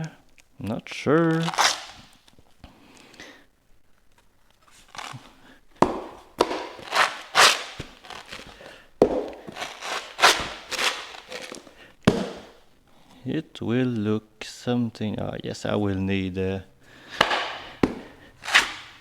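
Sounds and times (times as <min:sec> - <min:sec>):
handling knocks and scuffs: 0:04.6 - 0:12.7, 0:17.2 - 0:19.0.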